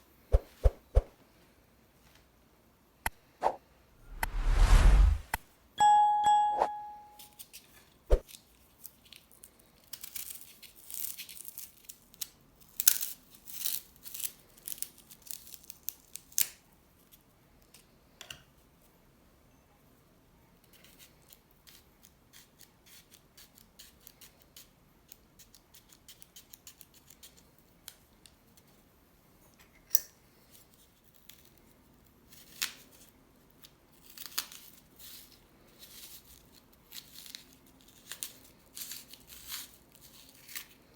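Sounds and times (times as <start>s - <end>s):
snipping and tearing ingredients: 8.8s - 16.6s, 20.8s - 28.4s, 32.3s - 40.8s.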